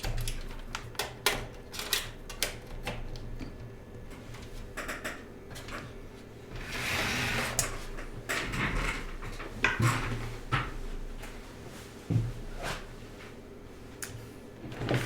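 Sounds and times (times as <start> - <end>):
clicks and knocks of computer parts: 0.0 - 3.6.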